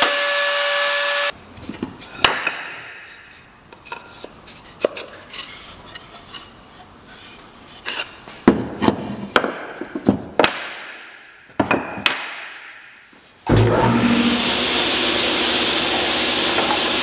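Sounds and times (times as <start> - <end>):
wooden knocks and clunks: 8.4 - 11.0, 11.6 - 12.2.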